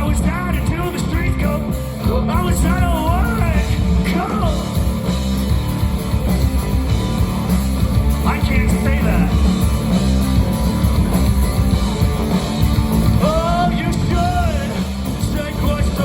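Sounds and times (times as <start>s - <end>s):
rock music with guitar: 0.0s - 16.0s
person singing: 13.1s - 16.0s.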